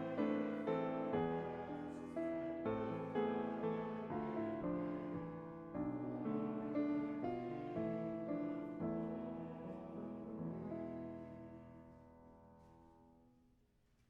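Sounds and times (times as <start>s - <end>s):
piano chords: 0.0s - 13.2s.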